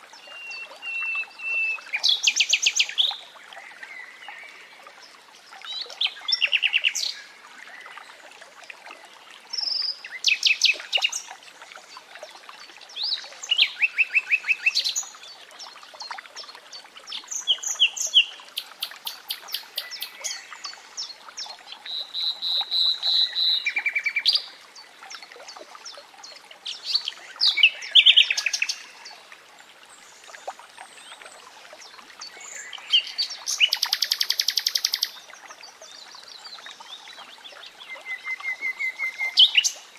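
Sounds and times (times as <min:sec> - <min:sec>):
running water: 0:00.0 - 0:39.9
nightingale singing: 0:32.9 - 0:35.2.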